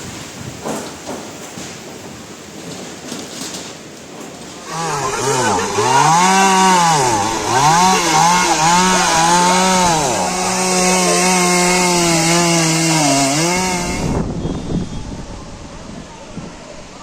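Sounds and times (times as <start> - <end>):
small engine revving: 4.6 - 14.6.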